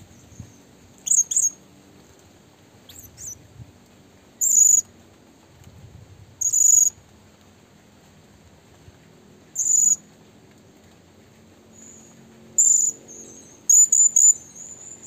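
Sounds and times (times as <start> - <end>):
high-pitched bird chirps: 1.0 - 1.6, 2.9 - 3.4, 4.4 - 4.8, 9.6 - 10.0, 12.6 - 15.0.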